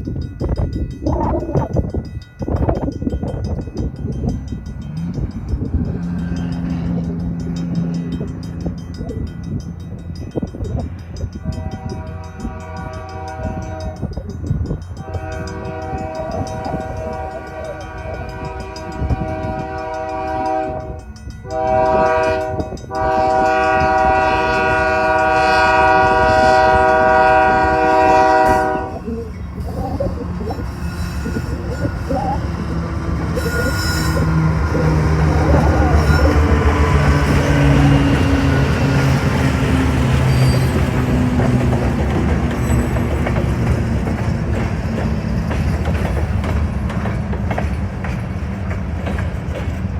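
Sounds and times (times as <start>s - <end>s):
low rumble of locomotive and train: 0.0s - 49.9s
locomotive air horn chord: 11.4s - 14.1s, 15.0s - 29.2s.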